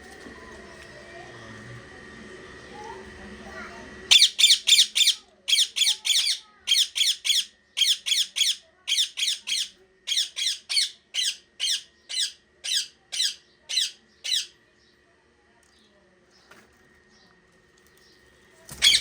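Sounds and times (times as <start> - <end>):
parrot squawking: 4.1 - 14.5, 18.8 - 19.0.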